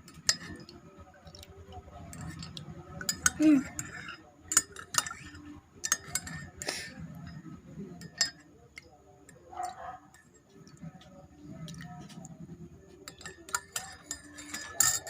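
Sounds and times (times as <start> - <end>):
utensils clinking on glass: 0.0 - 0.7, 2.1 - 10.5, 13.0 - 15.0.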